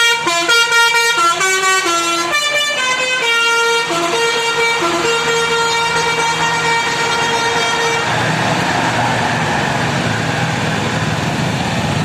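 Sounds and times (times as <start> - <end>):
musical bus horn: 0.0 - 8.7
engine and road noise: 0.0 - 12.0.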